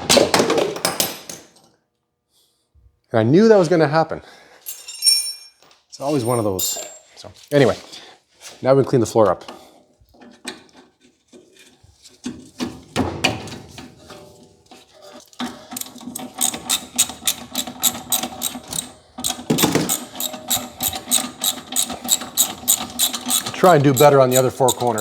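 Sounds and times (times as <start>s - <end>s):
ratchet wrench clicking: 15.8s - 25.0s.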